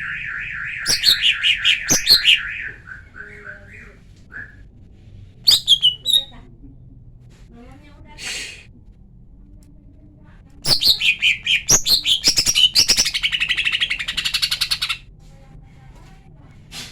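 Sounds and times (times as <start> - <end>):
bird chattering trill: 0.0 - 3.9, 5.5 - 6.3, 10.6 - 15.0.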